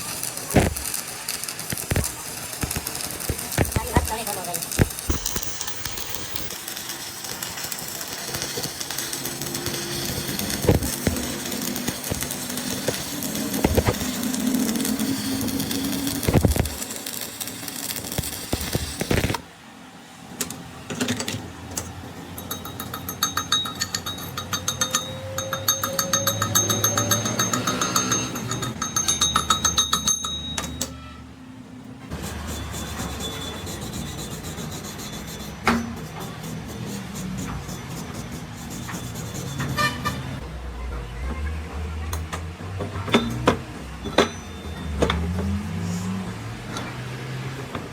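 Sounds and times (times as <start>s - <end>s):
steady machine noise: 0.0s - 19.4s
mechanical rattle with ringing whine: 4.6s - 19.1s, 22.2s - 31.1s, 44.0s - 45.3s.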